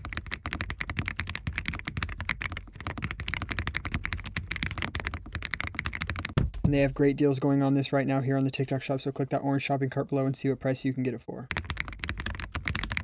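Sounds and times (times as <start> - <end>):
mechanical keyboard typing: 0.0 - 6.8, 11.5 - 13.0.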